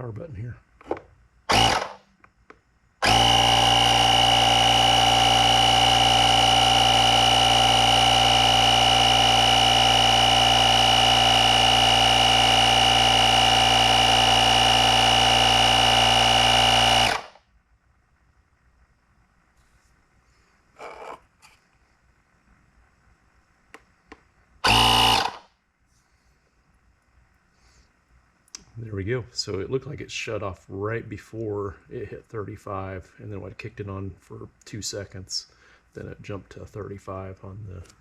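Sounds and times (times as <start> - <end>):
air compressor running: 1.5 - 2.0, 3.0 - 17.4, 24.6 - 25.5.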